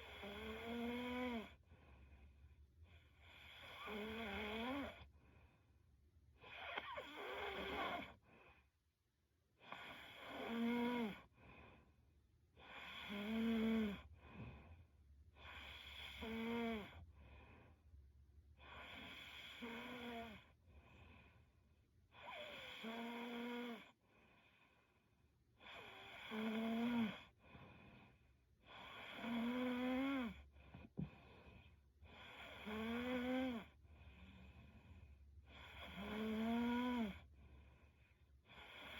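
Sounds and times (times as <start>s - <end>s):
woman snoring: 0.0s - 1.6s, 3.2s - 5.1s, 6.4s - 8.2s, 9.7s - 11.3s, 12.6s - 14.1s, 15.4s - 17.0s, 18.6s - 20.5s, 22.2s - 24.0s, 25.6s - 27.4s, 28.7s - 30.5s, 32.1s - 33.8s, 35.5s - 37.3s, 38.5s - 38.9s.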